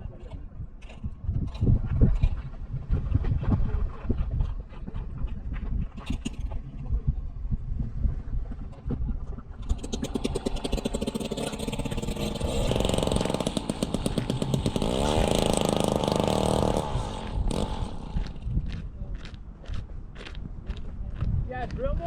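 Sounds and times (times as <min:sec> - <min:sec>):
ice auger motor drilling: 0:09.6 - 0:18.4.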